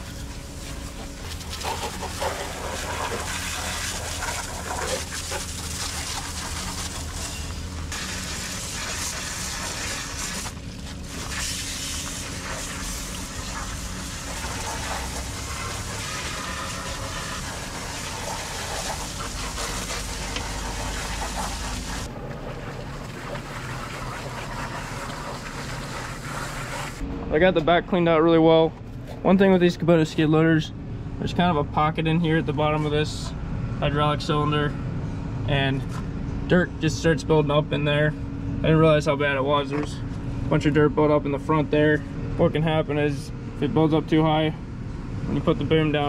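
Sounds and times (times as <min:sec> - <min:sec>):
hose spraying water: 0:00.0 - 0:22.1, 0:22.7 - 0:27.0.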